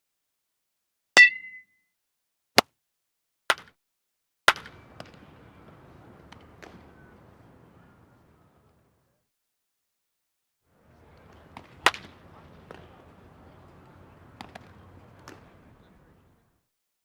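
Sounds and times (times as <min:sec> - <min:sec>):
bat hitting ball: 0:01.2 - 0:01.6, 0:03.5 - 0:03.7, 0:04.5 - 0:08.1, 0:10.9 - 0:16.0.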